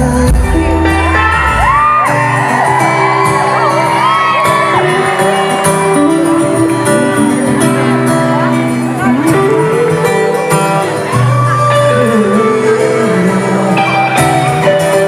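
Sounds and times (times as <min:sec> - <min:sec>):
acoustic guitars playing: 0:00.0 - 0:15.0
audience screaming and whooping: 0:00.4 - 0:15.0.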